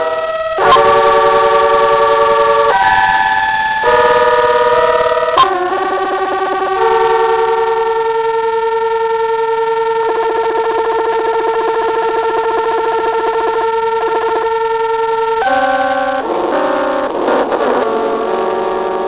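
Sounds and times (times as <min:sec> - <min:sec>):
buzzy electronic keyboard tone: 0:00.0 - 0:19.0
fast stuttering pulse: 0:09.9 - 0:19.0.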